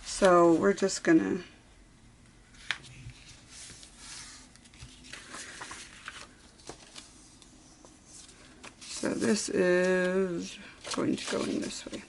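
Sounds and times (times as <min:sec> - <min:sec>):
paper and card rustling: 0:02.5 - 0:12.0.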